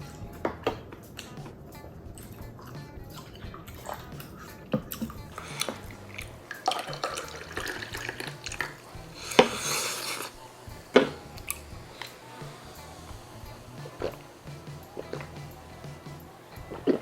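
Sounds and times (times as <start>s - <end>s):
background music: 0.0s - 17.0s
dishes and utensils clinking: 2.2s - 12.3s
liquid splashing: 2.2s - 17.0s.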